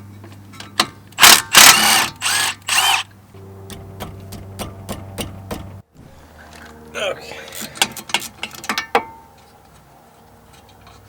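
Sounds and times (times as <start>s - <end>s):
cordless drill whirring: 1.2s - 3.0s.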